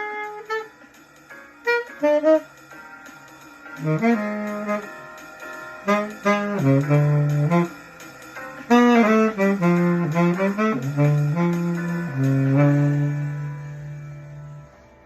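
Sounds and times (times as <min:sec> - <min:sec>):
solo wind instrument melody: 0:00.0 - 0:00.8, 0:01.6 - 0:02.6, 0:03.8 - 0:05.2, 0:05.8 - 0:07.8, 0:08.7 - 0:14.0.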